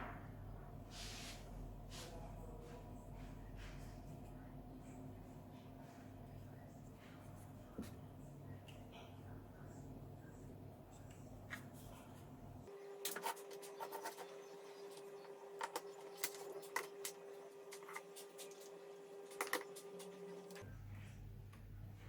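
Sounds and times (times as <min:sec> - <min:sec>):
faint hum: 0:00.0 - 0:22.0.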